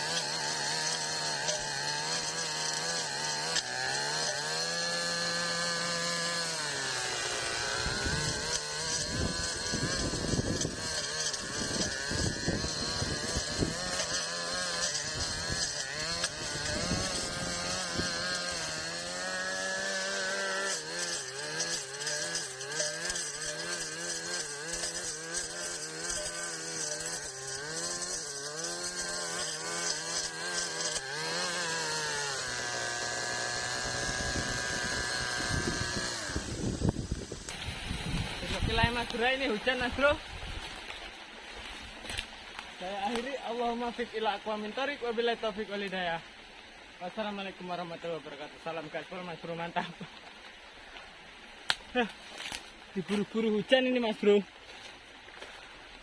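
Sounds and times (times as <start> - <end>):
blade slashing through grass: 0.0 - 43.4
brush cutter engine running: 0.0 - 46.9, 51.6 - 56.0.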